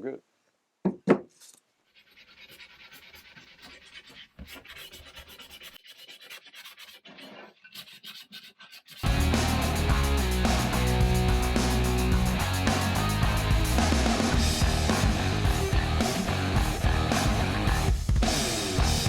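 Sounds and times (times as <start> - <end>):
sandpaper rubbing on metal: 1.8 - 11.0
loud guitar music: 9.0 - 19.0.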